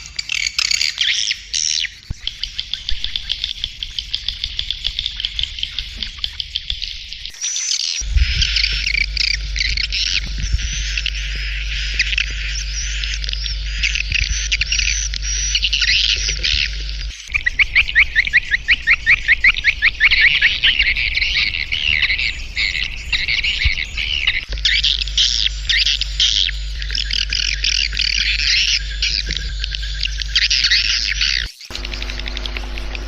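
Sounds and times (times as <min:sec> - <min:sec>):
rapid repeated chirps: 0:00.0 - 0:33.0
swiftlets chirping densely: 0:17.1 - 0:29.2.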